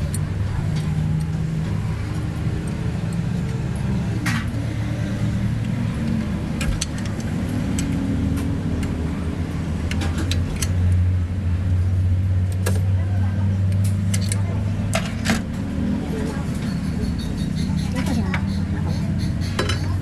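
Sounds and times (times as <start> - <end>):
engine running: 0.0 - 20.0
sharp metallic clicks and taps: 5.5 - 9.0.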